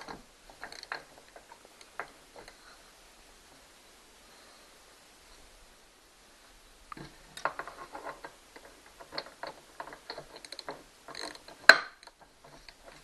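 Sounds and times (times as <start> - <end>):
tool ticking and clicking on bolt: 0.0 - 2.6, 7.4 - 13.0.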